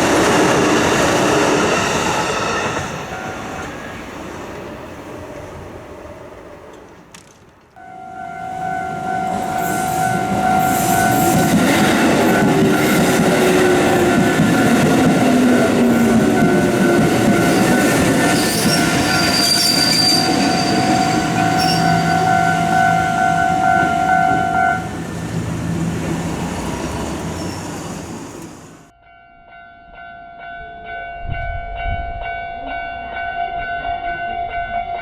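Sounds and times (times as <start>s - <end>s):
train wheels rumbling: 0.0s - 7.8s, 8.8s - 28.9s
crossing warning bell: 2.7s - 3.8s, 7.8s - 28.0s
wheels squealing: 9.3s - 28.9s.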